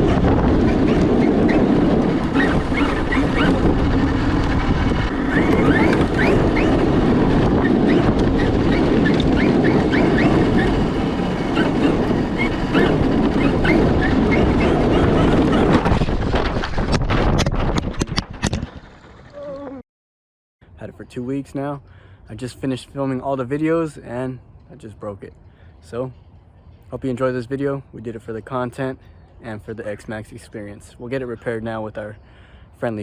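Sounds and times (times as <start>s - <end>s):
rc truck motor rumble: 0.0s - 16.5s
wind on microphone: 0.0s - 19.8s.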